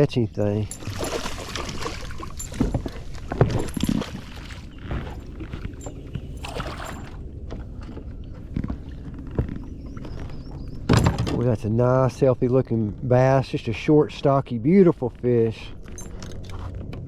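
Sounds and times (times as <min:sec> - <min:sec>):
water splashing: 0:00.6 - 0:07.3.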